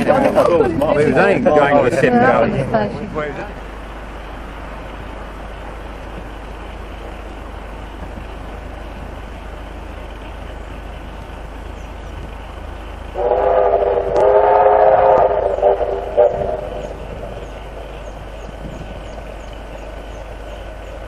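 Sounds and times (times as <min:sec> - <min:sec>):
steady background noise: 0:00.0 - 0:21.0
steam locomotive whistle blast: 0:13.2 - 0:18.0.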